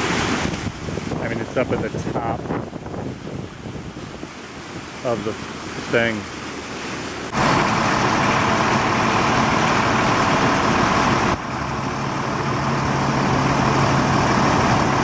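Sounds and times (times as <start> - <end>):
vehicle engine running: 7.3 - 15.0.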